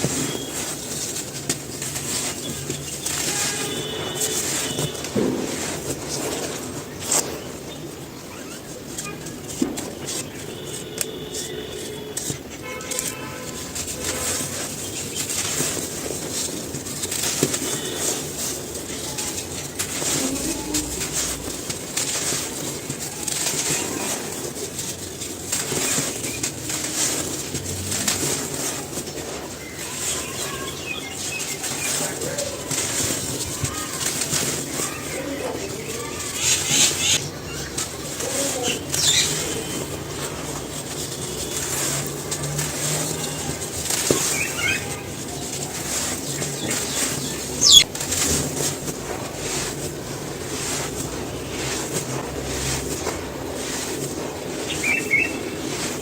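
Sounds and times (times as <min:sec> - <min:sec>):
dry cement crunching by hand: 0:00.0 - 0:56.0
bird-like chirp: 0:00.1 - 0:00.8, 0:29.2 - 0:32.2, 0:38.5 - 0:39.9, 0:44.2 - 0:45.0, 0:46.2 - 0:47.9, 0:54.7 - 0:55.7
high sweeping call: 0:43.1 - 0:49.8, 0:54.4 - 0:56.0.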